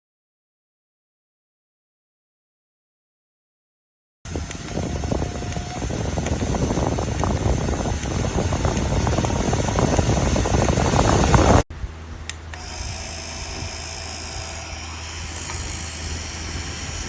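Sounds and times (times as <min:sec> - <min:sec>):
wind buffeting microphone: 0:04.3 - 0:12.0
fan whine: 0:04.3 - 0:17.0.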